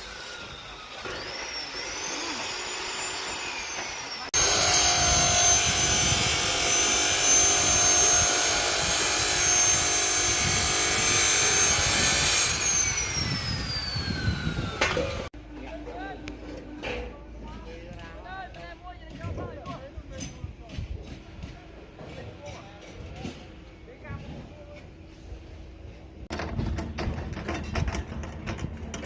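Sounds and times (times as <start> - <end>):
high-pitched motor whine: 0.0 - 15.3.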